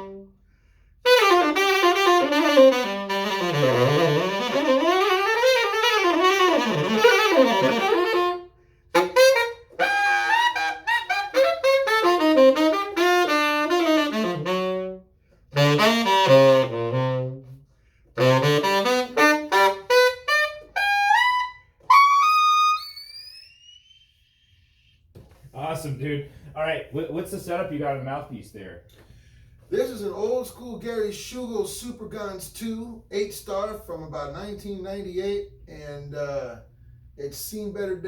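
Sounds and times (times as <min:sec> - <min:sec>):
tenor saxophone playing fast runs: 0:00.0 - 0:00.4, 0:01.0 - 0:24.1.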